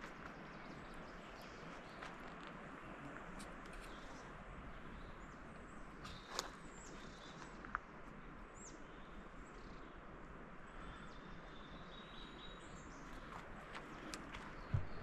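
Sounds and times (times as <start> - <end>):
small birds chirping: 3.2 - 15.0
footstep thud: 14.7 - 15.0.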